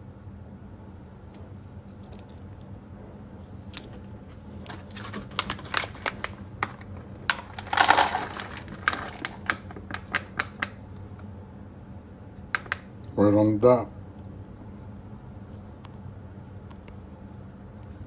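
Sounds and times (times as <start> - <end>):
low steady hum: 0.0 - 18.0
small objects clicking on table: 12.5 - 12.9.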